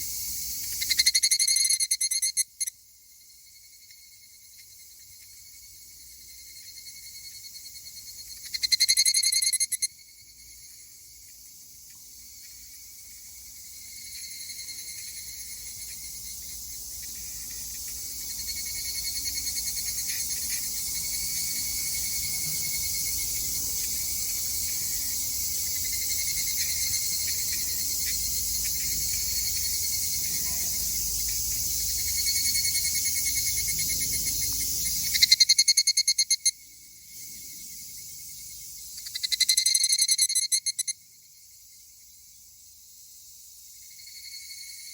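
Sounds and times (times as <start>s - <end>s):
cicada pulsed bursts: 0.0s - 2.8s, 12.4s - 41.8s
high steady cicada trill: 0.0s - 44.9s.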